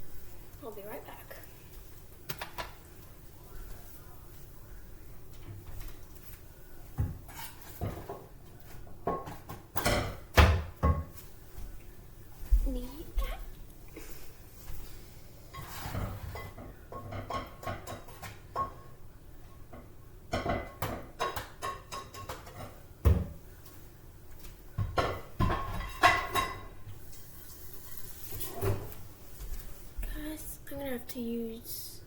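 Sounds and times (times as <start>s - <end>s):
pots and pans clattering: 7.0s - 11.2s, 15.5s - 19.0s, 19.6s - 23.4s, 24.8s - 26.9s.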